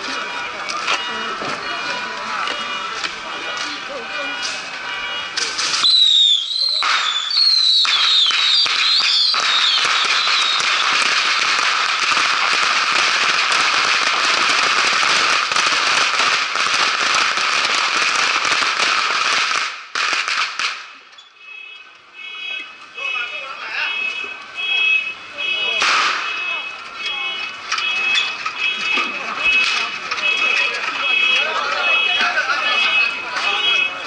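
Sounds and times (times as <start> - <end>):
fireworks crackling: 0.0 - 21.1, 25.6 - 34.0
rocket whistles: 5.7 - 11.0.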